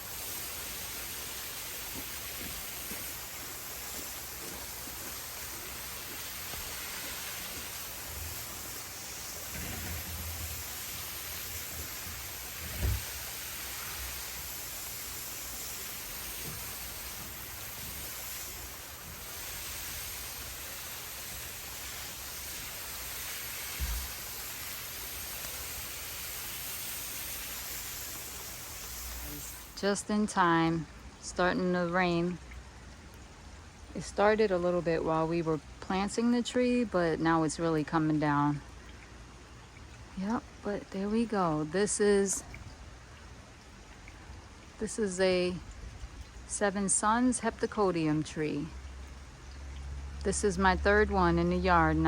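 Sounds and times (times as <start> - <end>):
heavy rain: 0.0 - 29.8.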